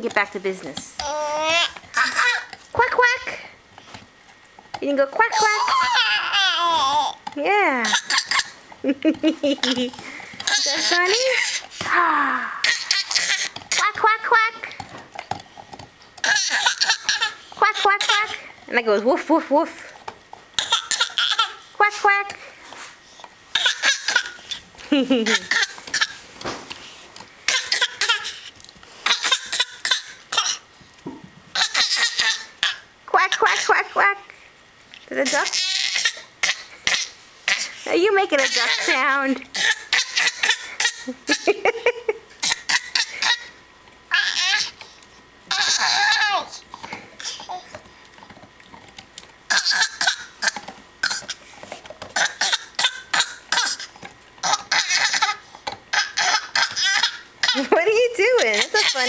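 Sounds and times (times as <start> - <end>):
toddler making quacking noises: 1.0 - 3.3, 5.3 - 7.2, 7.8 - 8.5, 10.4 - 11.6, 16.2 - 18.4, 29.0 - 30.6, 31.6 - 33.9, 35.2 - 37.8, 38.4 - 41.1, 52.2 - 57.7, 58.5 - 59.0.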